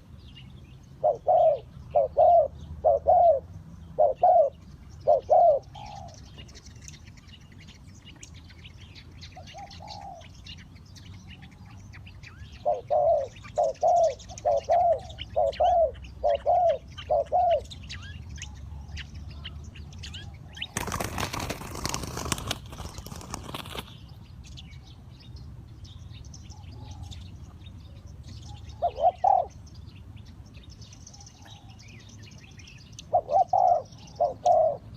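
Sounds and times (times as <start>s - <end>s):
small birds chirping: 0.0s - 34.9s
dove cooing: 1.0s - 6.5s, 9.4s - 10.5s, 11.4s - 23.8s, 28.5s - 29.6s, 33.0s - 34.9s.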